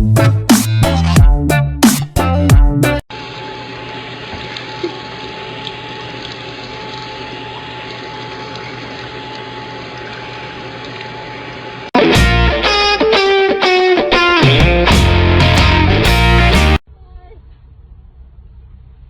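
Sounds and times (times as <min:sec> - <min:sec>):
loud music: 0:00.0 - 0:03.0, 0:12.0 - 0:16.8.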